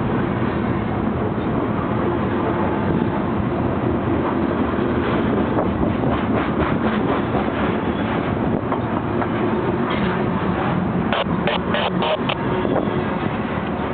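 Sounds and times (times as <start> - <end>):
freight train rumbling past: 0.0 - 13.9
wheels clacking over rail joints: 5.0 - 11.1.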